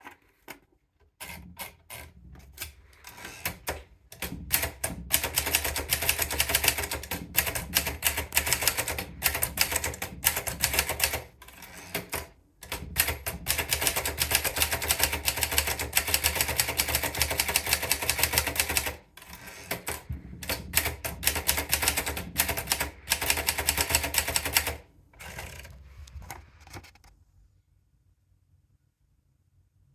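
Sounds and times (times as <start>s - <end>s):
typewriter keys striking: 3.2s - 25.7s.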